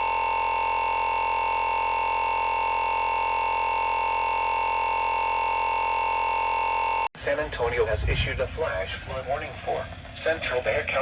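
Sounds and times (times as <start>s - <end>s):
electronic buzzing tone: 0.0s - 7.1s.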